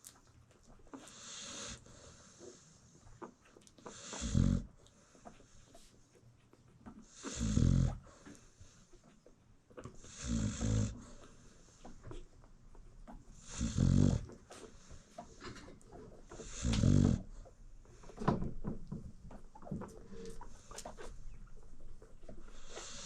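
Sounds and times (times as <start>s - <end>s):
dog snoring deeply: 1.1s - 2.7s, 3.9s - 4.8s, 7.1s - 8.2s, 10.0s - 11.2s, 13.3s - 14.4s, 16.4s - 17.4s, 22.5s - 23.0s
soft breath: 19.8s - 21.5s, 22.2s - 23.0s.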